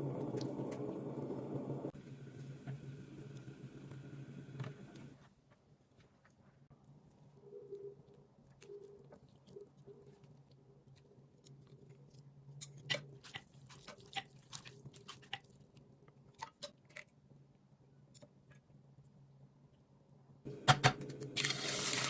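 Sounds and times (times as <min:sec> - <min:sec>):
low steady hum: 0:00.0 - 0:05.2
chewing with crunches: 0:07.2 - 0:17.2.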